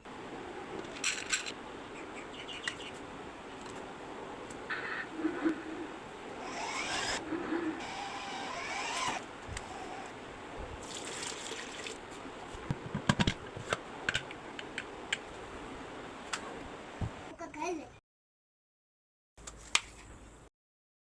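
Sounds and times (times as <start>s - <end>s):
water pouring: 10.8s - 12.0s.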